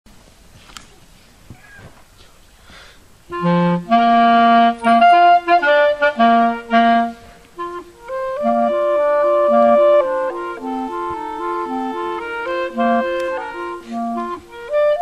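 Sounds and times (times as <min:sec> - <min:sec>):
woodwind playing lively tune: 0:03.3 - 0:15.0.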